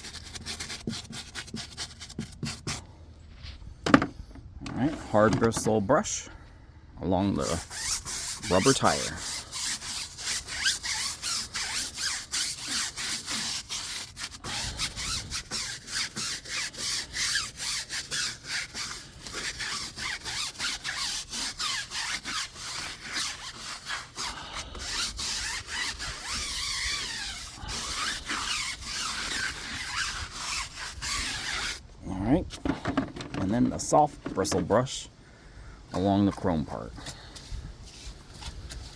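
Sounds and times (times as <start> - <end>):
brush scrubbing wet rubber tire: 0.0 - 2.8, 7.2 - 31.9.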